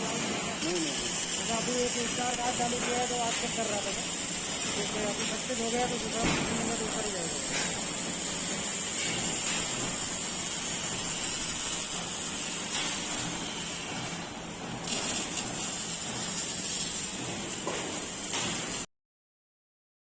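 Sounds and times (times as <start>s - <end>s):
welding arc sizzling hiss: 0.0s - 18.9s.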